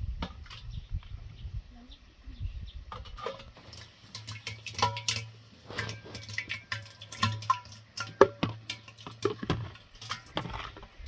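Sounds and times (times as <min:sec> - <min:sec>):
dishes and metal utensils clinking: 0:04.4 - 0:10.7.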